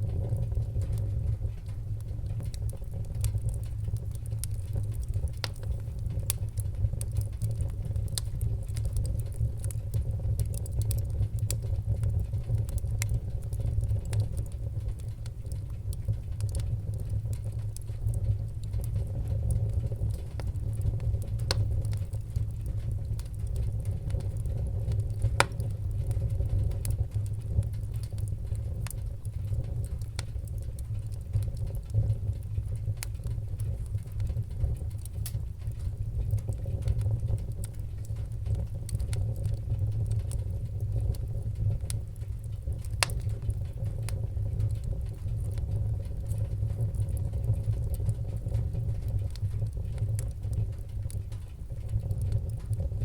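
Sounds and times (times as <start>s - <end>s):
wood fire crackling: 0.0s - 53.0s.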